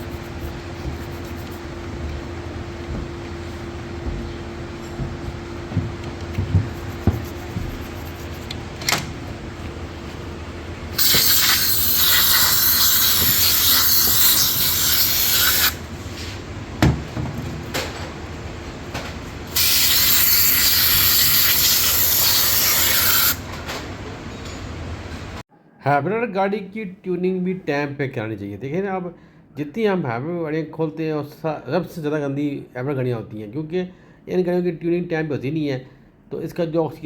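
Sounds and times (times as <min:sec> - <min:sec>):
pressurised spray hissing: 0:11.0 - 0:15.8, 0:19.5 - 0:23.4.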